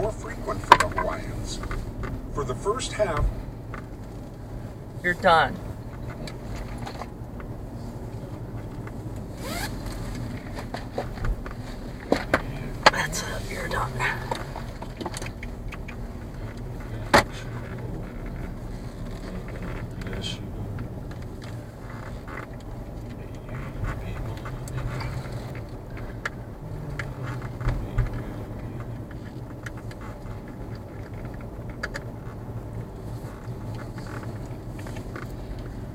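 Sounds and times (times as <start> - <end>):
engine and road drone: 0.0 - 35.9
small clicks and rattles: 14.2 - 35.9.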